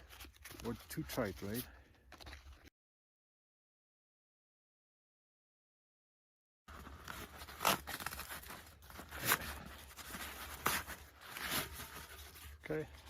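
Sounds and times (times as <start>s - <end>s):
fabric rustling and crinkling: 6.7s - 13.0s.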